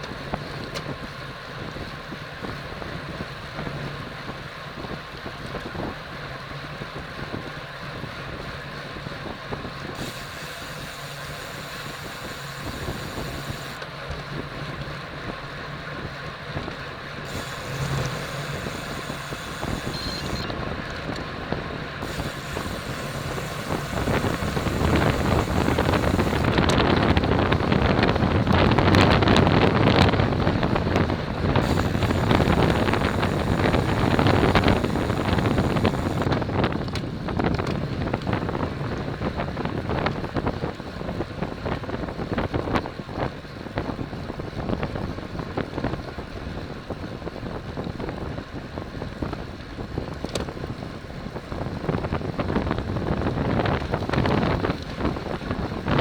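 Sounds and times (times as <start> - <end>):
road noise: 0.0 - 42.5
small clicks: 10.0 - 13.9, 17.3 - 21.3, 22.0 - 26.8, 31.0 - 37.8
wind rushing over microphone: 16.0 - 56.0.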